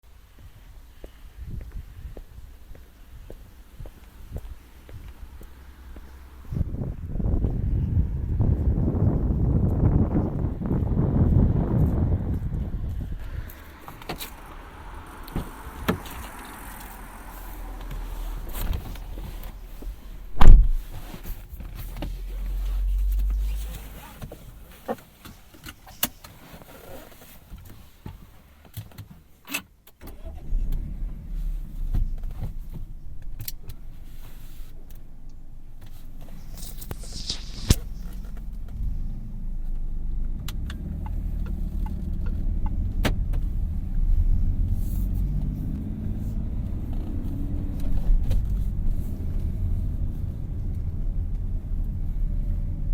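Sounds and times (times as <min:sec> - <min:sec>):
low engine and road rumble: 0:00.0 - 0:52.9
heavy thump in car: 0:11.8 - 0:17.2, 0:17.8 - 0:22.2.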